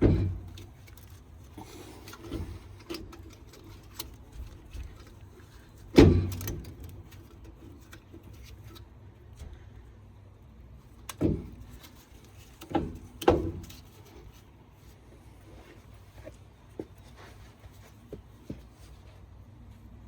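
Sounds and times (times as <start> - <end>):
metal clunks and knocks: 0.0 - 0.8, 5.9 - 7.6, 11.1 - 14.2.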